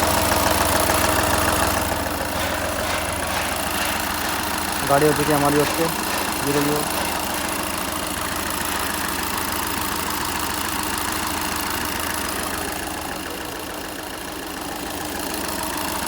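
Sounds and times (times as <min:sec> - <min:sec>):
diesel engine idling: 0:00.0 - 0:16.0.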